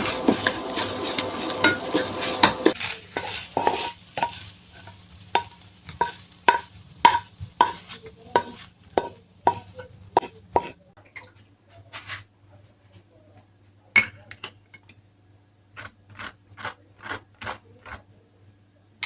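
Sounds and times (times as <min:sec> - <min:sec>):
spatula scraping frying pan: 0:00.0 - 0:10.9
faint sizzle: 0:00.0 - 0:19.0.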